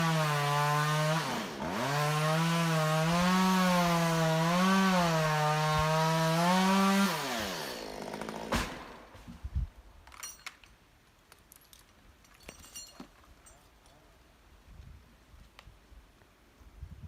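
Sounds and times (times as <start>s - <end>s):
chainsaw cutting wood: 0.0s - 9.3s.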